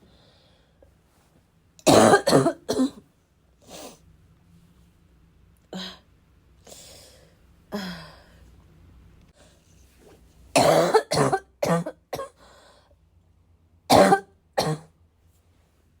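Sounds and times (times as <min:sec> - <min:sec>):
faint breath: 0:00.0 - 0:00.9, 0:12.4 - 0:13.0
person coughing: 0:01.8 - 0:03.0, 0:10.6 - 0:12.4, 0:13.9 - 0:14.9.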